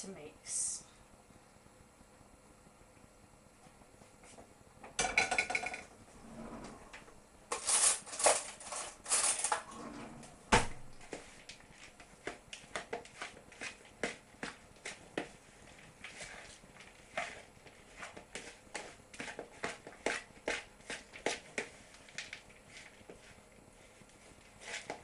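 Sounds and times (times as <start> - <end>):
spoon scraping a mixing bowl: 12.6 - 25.0.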